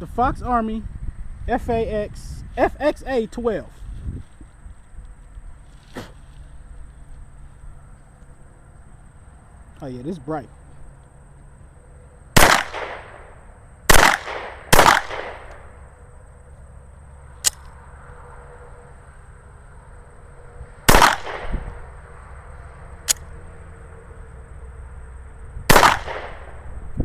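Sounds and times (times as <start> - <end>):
pistol shots echoing: 12.4 - 13.3, 13.9 - 15.6, 20.9 - 21.5, 25.7 - 26.6.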